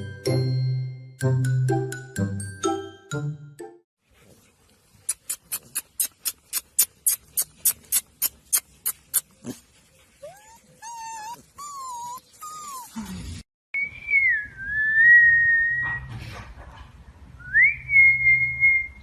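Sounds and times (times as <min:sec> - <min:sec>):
dog whining: 0:10.2 - 0:13.4.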